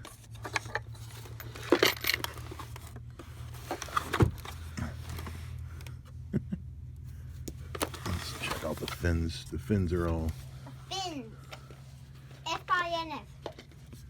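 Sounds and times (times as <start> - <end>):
rock and plastic parts clinking: 0.0 - 5.9
steady low hum: 0.0 - 12.5.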